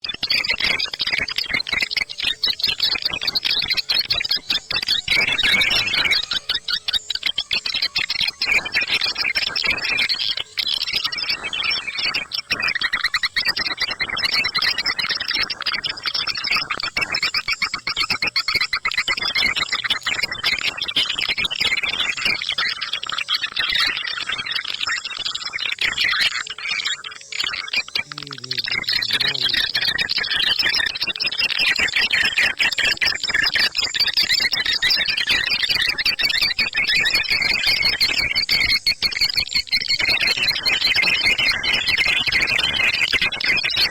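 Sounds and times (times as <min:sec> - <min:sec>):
swiftlets twittering: 0:00.1 - 0:16.9, 0:22.6 - 0:37.6.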